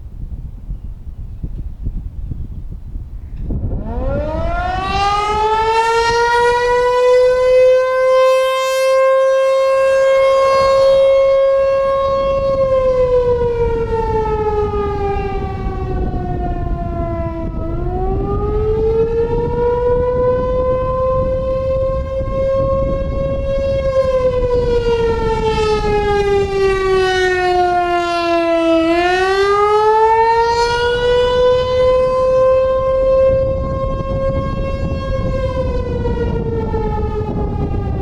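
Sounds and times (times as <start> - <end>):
warning siren rising and falling: 3.5 - 38.0.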